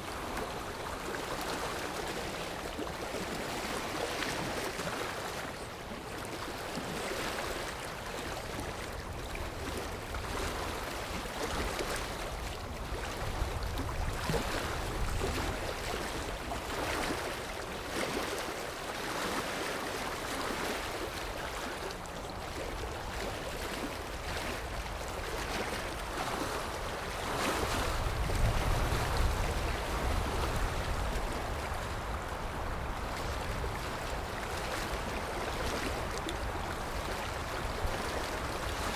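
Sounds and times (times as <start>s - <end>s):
sea waves washing in: 0.0s - 38.9s
low rumble of big wave: 19.9s - 38.9s.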